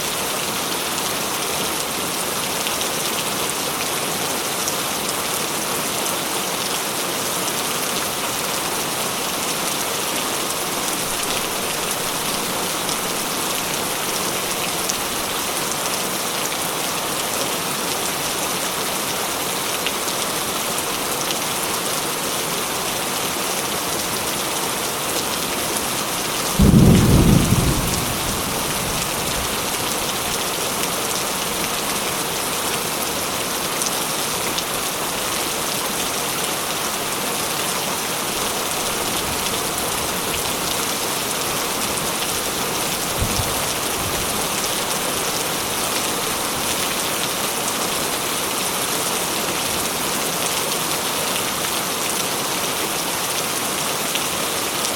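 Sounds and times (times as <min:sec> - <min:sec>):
heavy rain: 0:00.0 - 0:54.9
thunder clap: 0:26.6 - 0:29.6.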